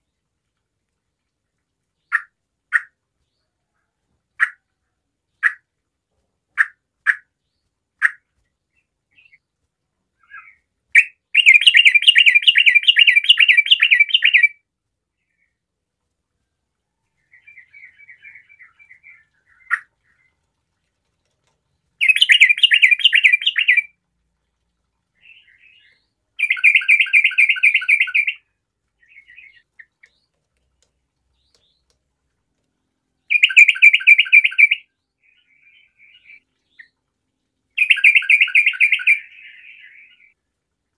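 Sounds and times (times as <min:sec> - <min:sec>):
bird short calls and twitters: 0:10.2 - 0:14.5, 0:22.0 - 0:23.9, 0:25.2 - 0:28.4, 0:33.3 - 0:37.0, 0:37.8 - 0:40.4
bird singing rapid chattering notes: 0:10.3 - 0:14.5, 0:22.0 - 0:23.9, 0:25.2 - 0:28.4, 0:33.3 - 0:36.9, 0:37.8 - 0:40.3.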